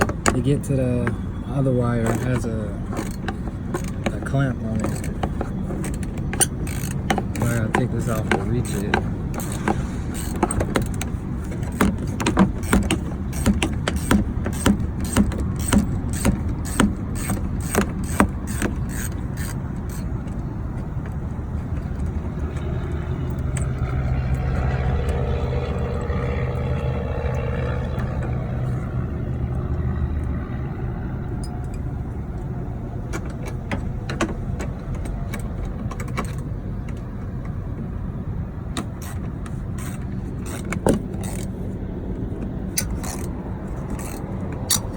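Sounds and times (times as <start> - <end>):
low engine hum: 0.0 - 44.9
steady low rumble: 0.0 - 44.9
ratchet wrench clicking: 2.0 - 20.5, 38.9 - 41.6, 42.4 - 44.9.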